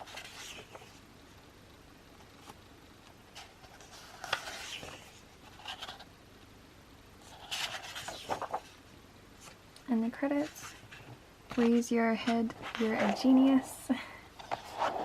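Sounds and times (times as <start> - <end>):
paper pages rustling: 0.0 - 1.0, 3.3 - 6.1, 7.2 - 8.8, 9.4 - 13.6, 14.4 - 15.0.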